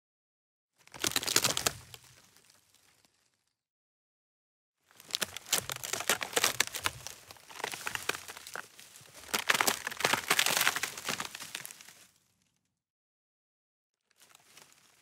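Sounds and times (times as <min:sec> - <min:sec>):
dry wood snapping and splintering: 0:00.9 - 0:02.0, 0:05.0 - 0:11.7.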